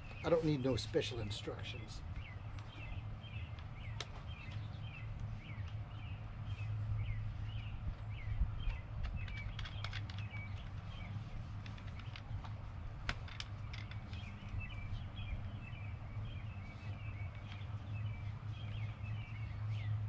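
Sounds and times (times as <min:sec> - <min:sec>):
small birds chirping: 0:00.0 - 0:20.0
clicks and knocks of handled parts: 0:08.6 - 0:14.8, 0:16.7 - 0:17.8.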